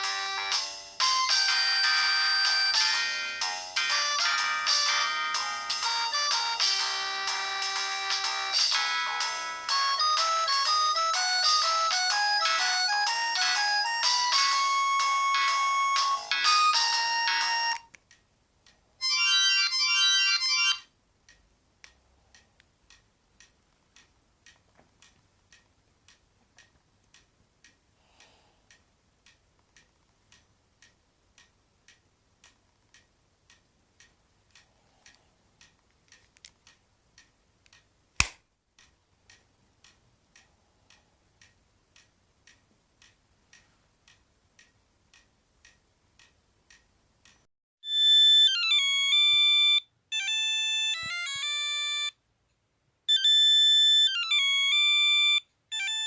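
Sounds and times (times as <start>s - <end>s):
electronic ringtone melody: 0.0s - 17.8s, 19.0s - 20.9s, 47.8s - 52.2s, 53.1s - 56.0s
faint steady ticking: 0.0s - 47.5s
sharp click: 37.7s - 38.4s.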